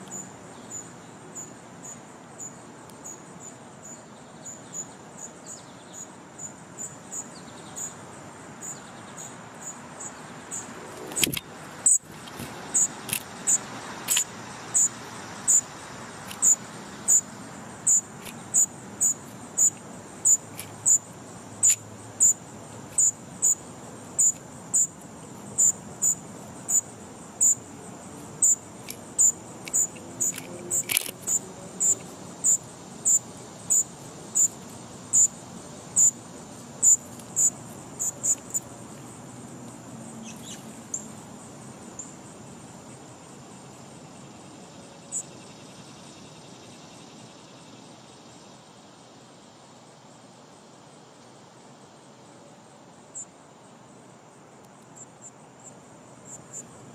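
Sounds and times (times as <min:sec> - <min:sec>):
insect chirping in high pulses: 0:00.0 - 0:52.3, 0:55.0 - 0:56.9.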